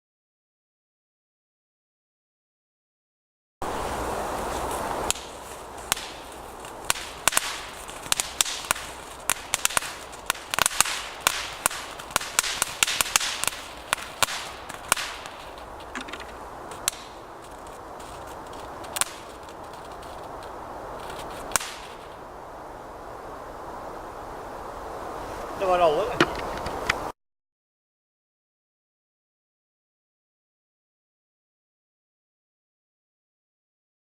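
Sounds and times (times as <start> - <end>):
firework hiss: 3.6 - 22.7
firework cracks and pops: 4.4 - 22.2.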